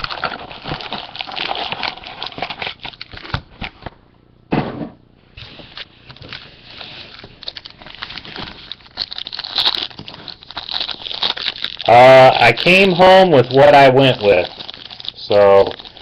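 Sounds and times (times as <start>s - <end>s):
card wrappers crackling and clicking: 0.0s - 3.9s, 5.5s - 16.0s
loud thump: 4.5s - 5.0s.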